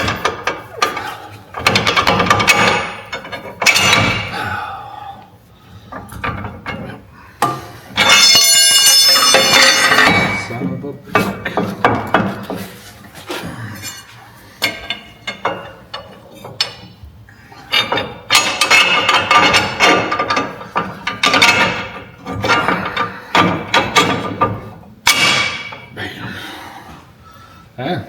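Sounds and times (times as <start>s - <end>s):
metal-on-metal clanks: 0.0s - 4.5s, 5.8s - 12.9s, 13.8s - 17.0s, 17.6s - 25.9s.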